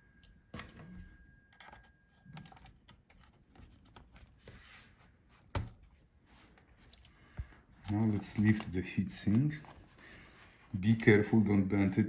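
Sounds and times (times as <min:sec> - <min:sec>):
small parts clicking and scratching: 0:05.8 - 0:07.2.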